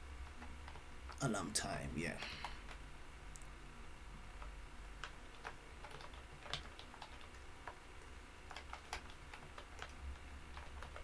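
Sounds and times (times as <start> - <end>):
computer keyboard typing: 0.2 - 1.2, 4.4 - 11.0.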